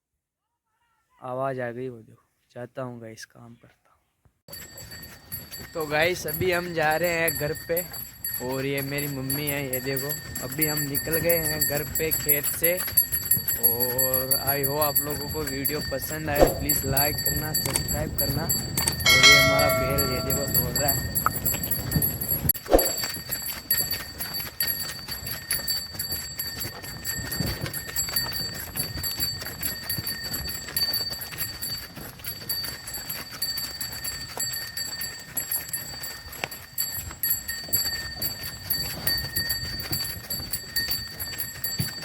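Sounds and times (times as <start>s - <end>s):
hooves clip-clopping: 4.5s - 42.0s
high-pitched ringing: 19.0s - 23.3s.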